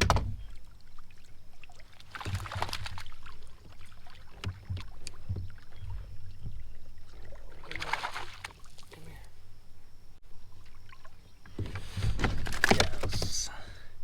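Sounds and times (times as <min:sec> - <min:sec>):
knocks and thumps on plastic kayak: 0:00.0 - 0:00.6, 0:02.1 - 0:08.6, 0:11.4 - 0:13.6.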